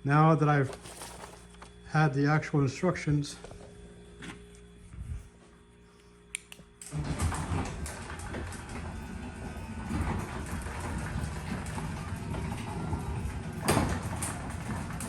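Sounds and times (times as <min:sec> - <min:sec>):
garage door opener rumbling: 0:06.8 - 0:15.0.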